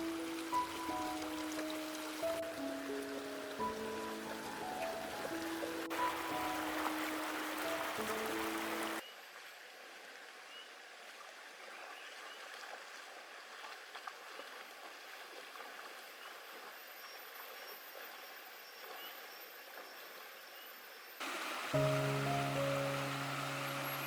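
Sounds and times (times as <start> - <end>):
stream flowing: 0.0 - 24.0.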